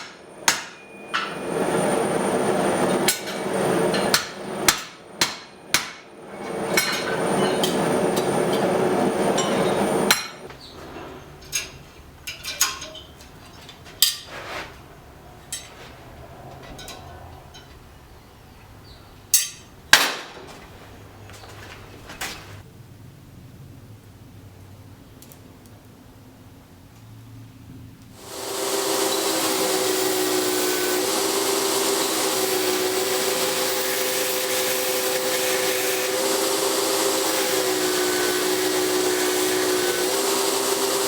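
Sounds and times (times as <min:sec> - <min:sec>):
hammer striking steel on anvil: 0:00.0 - 0:01.4, 0:03.0 - 0:14.3, 0:16.5 - 0:17.8, 0:19.3 - 0:20.5.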